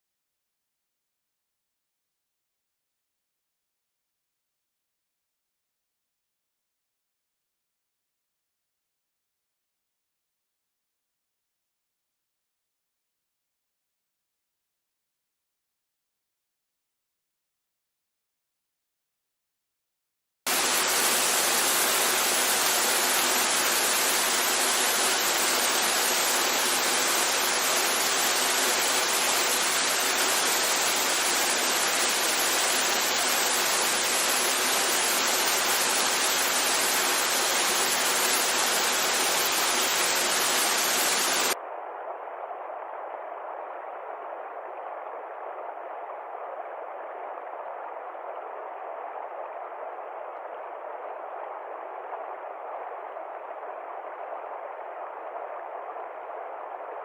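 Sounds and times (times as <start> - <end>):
rushing water: 20.5 - 41.6.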